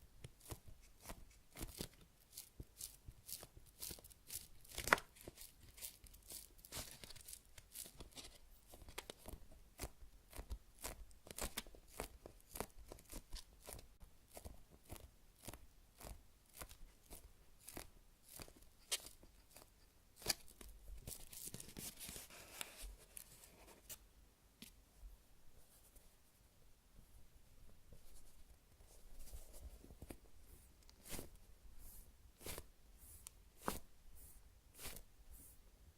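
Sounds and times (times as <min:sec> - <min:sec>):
soft rubbing hiss: 0:16.6 - 0:24.1, 0:24.7 - 0:35.9.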